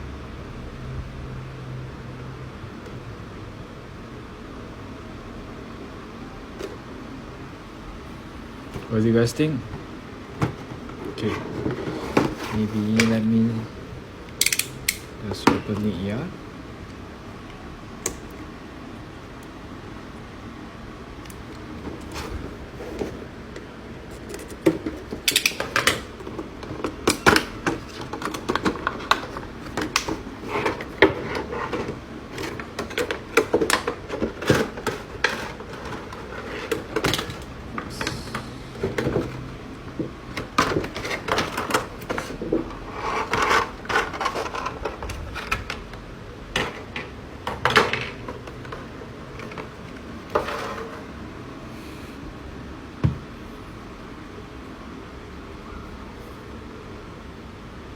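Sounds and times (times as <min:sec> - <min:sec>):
cardboard and plastic packaging rustling: 0:07.9 - 0:13.8, 0:21.2 - 0:51.4.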